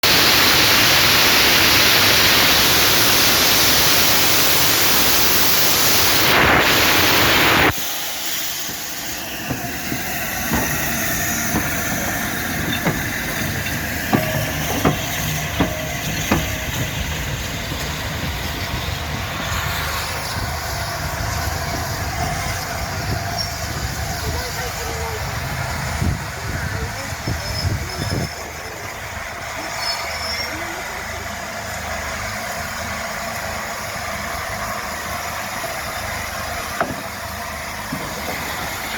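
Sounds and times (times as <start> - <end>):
steam locomotive blowing off steam: 0.0 - 38.9
sharp metallic clanks: 8.6 - 18.9.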